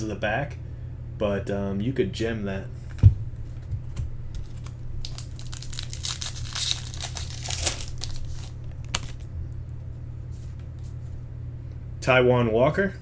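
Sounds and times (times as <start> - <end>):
steady low hum: 0.0 - 13.0
foil wrapper crinkling: 4.3 - 9.3.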